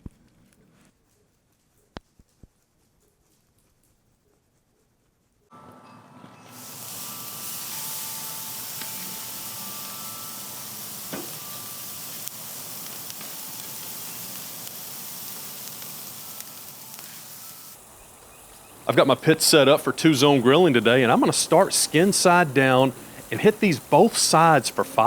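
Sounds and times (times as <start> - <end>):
meat sizzling on a grill: 6.5 - 25.0.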